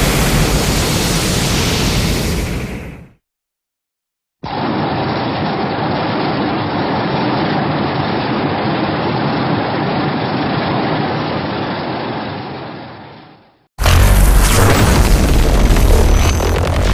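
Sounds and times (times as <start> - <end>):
dense rushing rumble: 0.0 - 3.1, 13.8 - 16.9.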